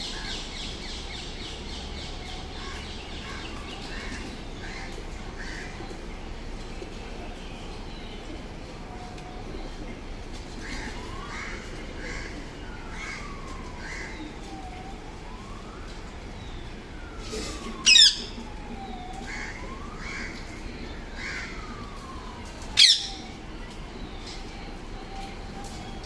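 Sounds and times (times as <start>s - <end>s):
parrots squawking: 17.8s - 18.3s, 22.8s - 23.2s.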